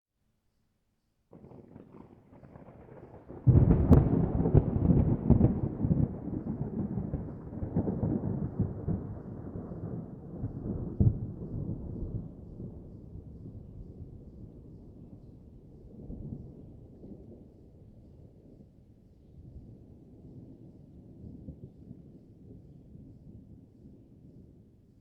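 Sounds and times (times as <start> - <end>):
thunder cracking and rumbling: 1.3 - 18.8.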